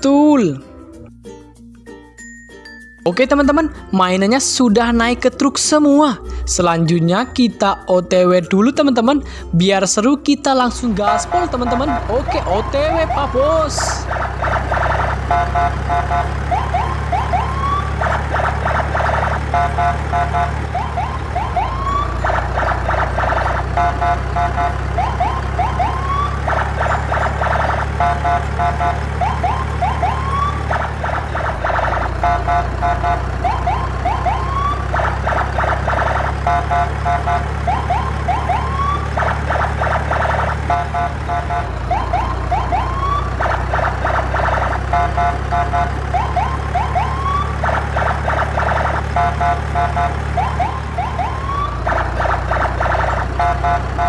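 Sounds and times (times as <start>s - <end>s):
electronic siren and alarm: 10.8s - 54.0s.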